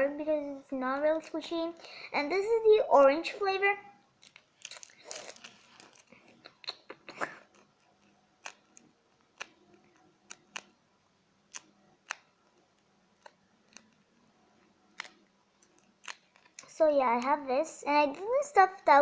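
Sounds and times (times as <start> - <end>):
paper crinkling: 4.2 - 6.4
paper crackles and clicks: 4.2 - 6.6, 11.5 - 14.2.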